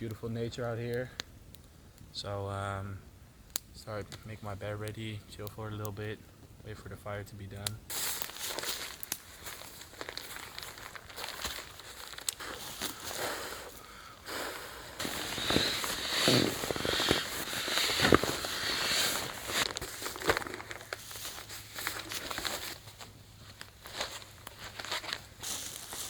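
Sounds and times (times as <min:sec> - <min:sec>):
sharp crackles: 0:00.0 - 0:26.0
sleeping bag rustling: 0:07.9 - 0:26.0.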